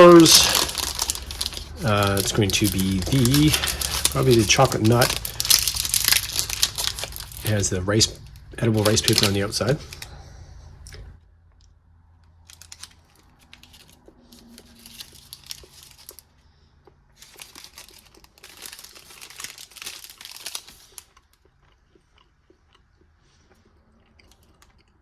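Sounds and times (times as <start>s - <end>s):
wrapper crinkling and tearing: 0.0s - 10.2s, 12.4s - 16.3s, 17.2s - 21.4s.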